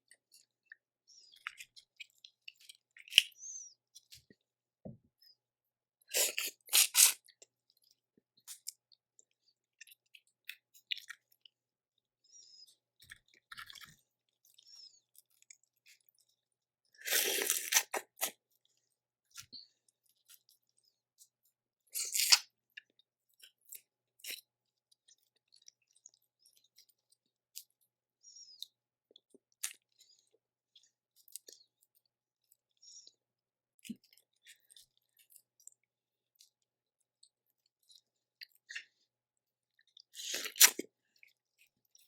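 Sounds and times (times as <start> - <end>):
wet chewing: 6.1 - 11.5, 39.7 - 42.0.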